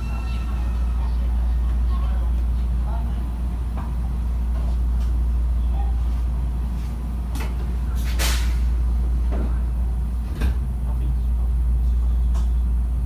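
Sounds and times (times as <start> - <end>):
electric train humming: 0.0 - 5.6.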